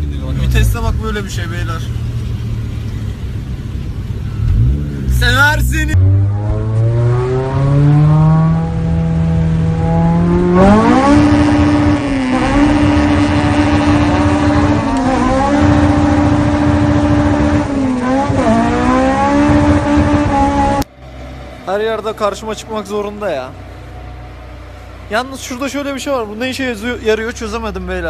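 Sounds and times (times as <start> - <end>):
car engine revving hard: 4.4 - 20.9.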